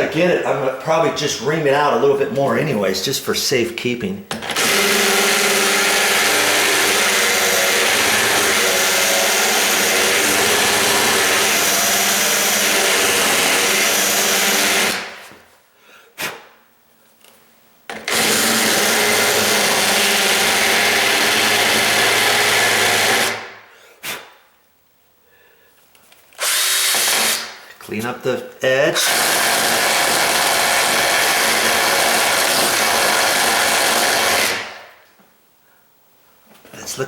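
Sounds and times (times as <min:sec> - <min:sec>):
power drill reaming metal: 0:04.4 - 0:15.3, 0:17.9 - 0:23.5, 0:26.4 - 0:27.6, 0:29.0 - 0:34.8.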